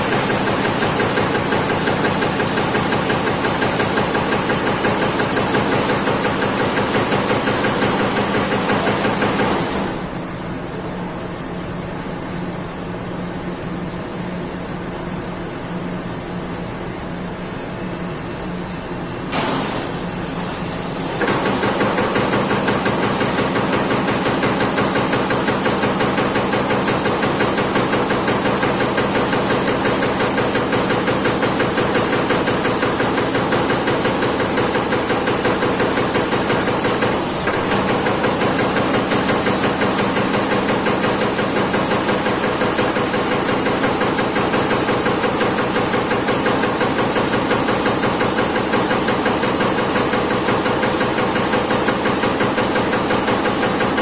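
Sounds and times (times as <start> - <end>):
punch press striking sheet metal: 0.0 - 10.2, 19.3 - 54.0
machine hiss: 19.3 - 54.0.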